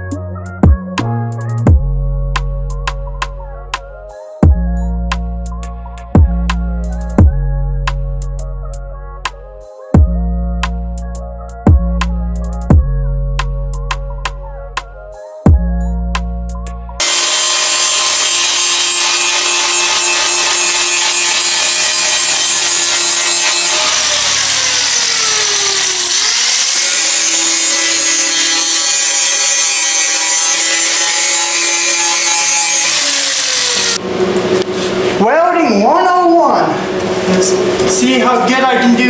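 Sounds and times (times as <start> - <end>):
power tool working steel: 17.0 - 35.2.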